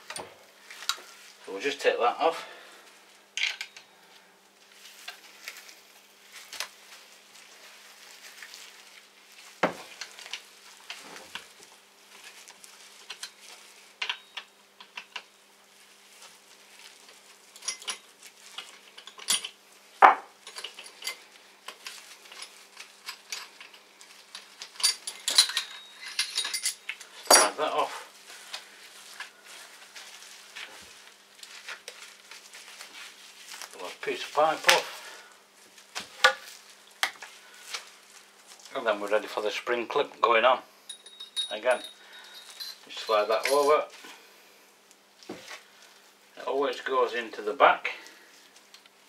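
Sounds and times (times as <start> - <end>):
metal tools clinking and scraping: 3.4 - 3.9, 13.0 - 15.3, 17.5 - 19.6, 20.4 - 28.6, 40.9 - 44.0.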